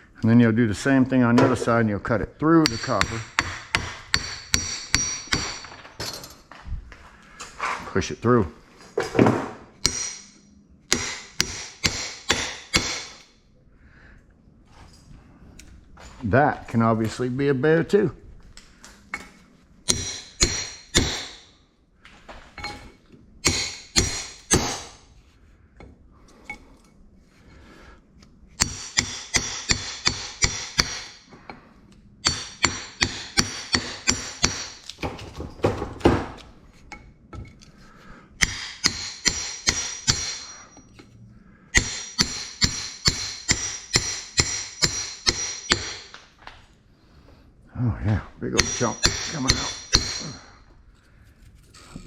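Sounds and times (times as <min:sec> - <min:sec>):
hammer striking metal: 0:02.6 - 0:06.3, 0:09.8 - 0:13.3, 0:19.9 - 0:21.5, 0:23.4 - 0:25.0, 0:28.6 - 0:31.3, 0:32.2 - 0:34.9, 0:38.4 - 0:40.9, 0:41.8 - 0:46.2, 0:48.5 - 0:50.6.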